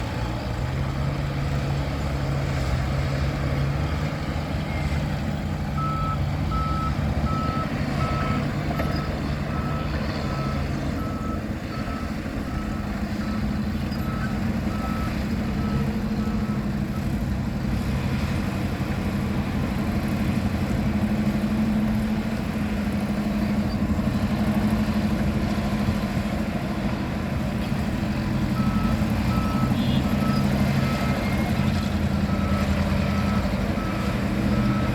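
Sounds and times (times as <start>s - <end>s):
construction machinery diesel engines: 0.0s - 34.9s
reversing alarm beeping: 5.8s - 17.1s, 28.6s - 34.9s.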